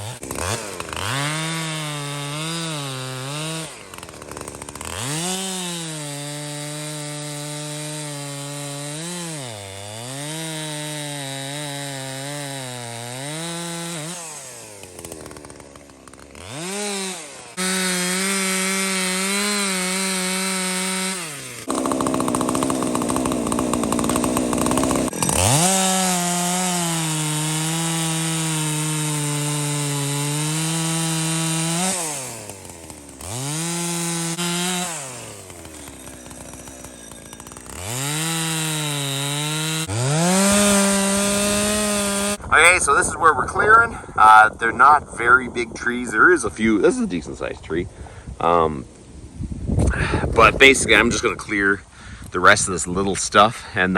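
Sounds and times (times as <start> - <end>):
chainsaw running at high revs: 0.0 - 42.4
chainsaw sawing through wood: 0.0 - 44.1, 49.9 - 53.9.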